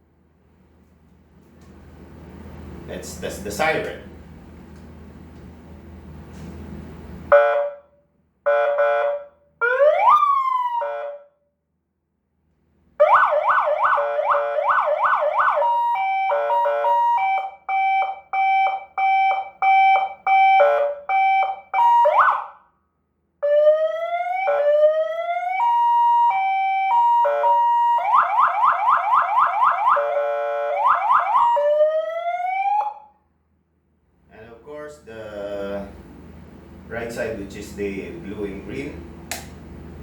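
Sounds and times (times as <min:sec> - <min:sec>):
electronic siren yelp and wail: 0:07.3 - 0:07.8, 0:08.5 - 0:11.3, 0:13.0 - 0:22.6, 0:23.4 - 0:33.2.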